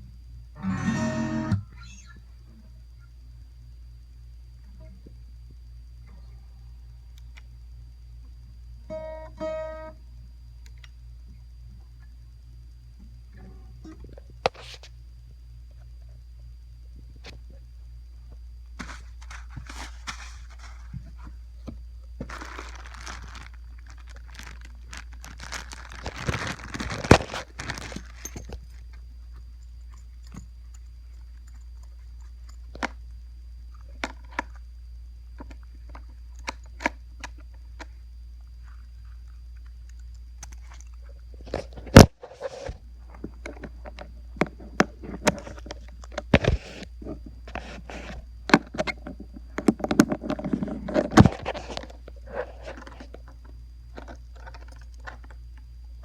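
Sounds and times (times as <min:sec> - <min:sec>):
steady low hum: 0:00.0 - 0:56.0
packaging rustling and crinkling: 0:18.8 - 0:21.4, 0:22.2 - 0:28.9, 0:49.6 - 0:53.3.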